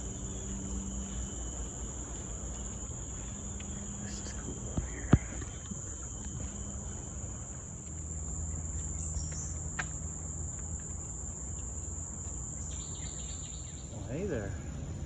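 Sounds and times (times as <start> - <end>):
distant traffic rumble: 0.0 - 15.0
insects droning: 0.0 - 15.0.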